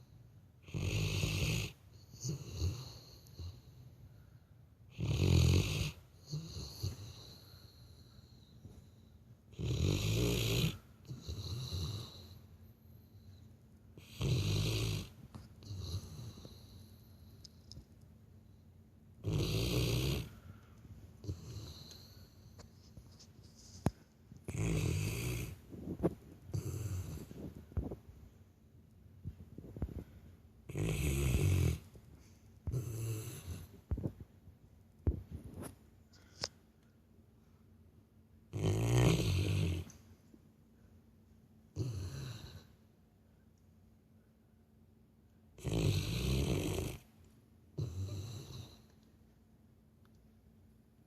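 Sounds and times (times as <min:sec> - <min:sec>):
dog snoring: 0:00.6 - 0:03.8, 0:04.9 - 0:08.5, 0:09.5 - 0:12.4, 0:14.0 - 0:17.1, 0:19.2 - 0:20.5, 0:21.2 - 0:22.6, 0:24.4 - 0:28.0, 0:30.7 - 0:31.9, 0:32.6 - 0:34.2, 0:38.5 - 0:40.0, 0:41.7 - 0:42.7, 0:45.6 - 0:47.1, 0:47.8 - 0:49.0
faint snorts: 0:14.0 - 0:16.7, 0:19.2 - 0:20.5, 0:24.5 - 0:28.0, 0:30.7 - 0:31.8, 0:38.6 - 0:39.9, 0:45.6 - 0:47.1, 0:47.8 - 0:48.9.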